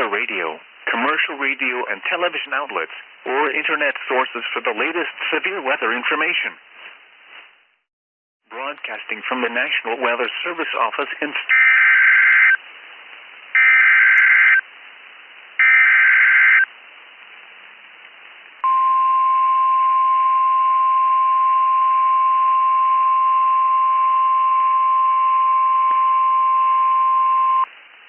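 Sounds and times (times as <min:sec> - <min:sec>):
electronic data screech bursts: 0:11.5 - 0:12.6, 0:13.6 - 0:14.6, 0:15.6 - 0:16.7
steady warning alarm tone: 0:11.5 - 0:12.6, 0:13.6 - 0:14.6, 0:15.6 - 0:16.7.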